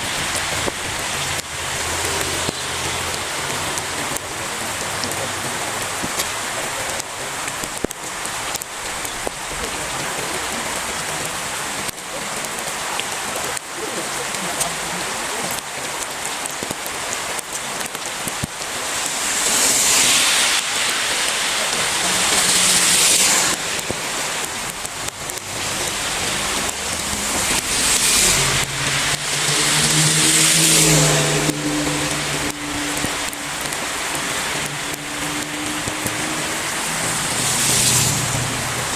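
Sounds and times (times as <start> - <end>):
heavy rain pouring: 0.0 - 38.9.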